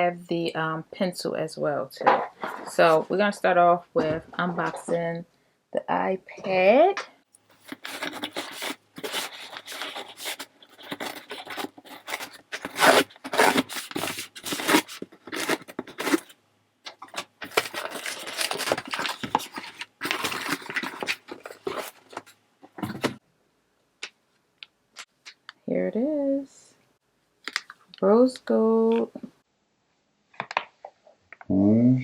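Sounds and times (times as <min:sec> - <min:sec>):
cardboard scraping: 0:07.6 - 0:16.3, 0:17.0 - 0:23.2
packaging tearing: 0:07.6 - 0:22.3.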